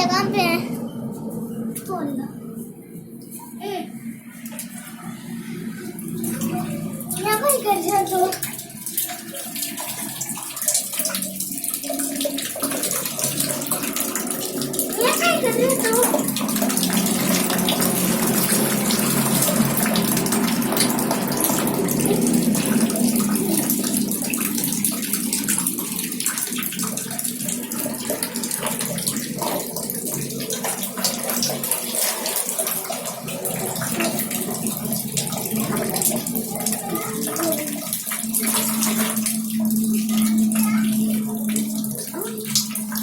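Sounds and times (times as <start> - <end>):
low hum: 0.0 - 9.1.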